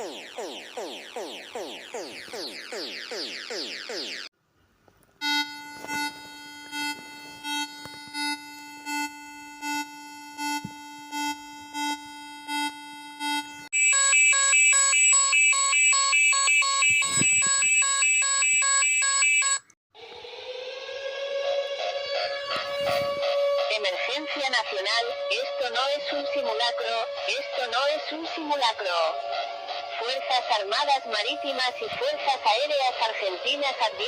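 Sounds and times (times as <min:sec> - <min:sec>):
pulsing alarm tone: 0:00.0 - 0:04.3, 0:05.2 - 0:34.0
alert tone with beeps: 0:05.2 - 0:19.7, 0:22.1 - 0:34.0.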